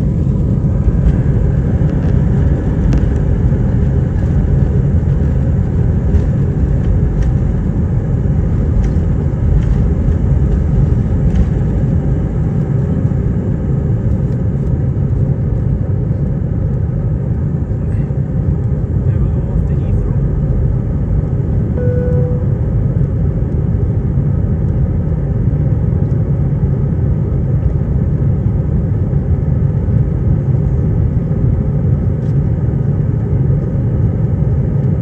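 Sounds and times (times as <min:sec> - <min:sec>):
faint steady whine: 0:00.0 - 0:23.9
jet engines rumbling: 0:00.0 - 0:34.9.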